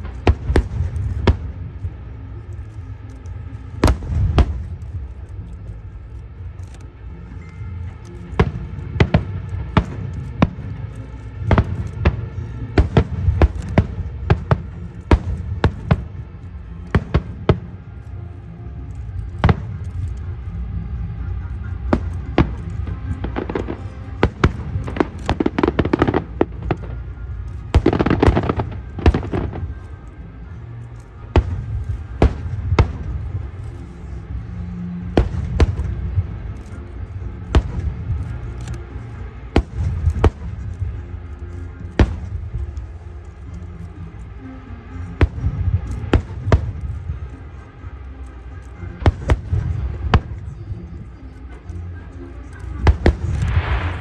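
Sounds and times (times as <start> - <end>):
fireworks crackling: 0.0 - 54.0
low rumble: 0.0 - 54.0
fireworks bangs: 8.4 - 16.2, 27.7 - 29.8, 52.8 - 54.0.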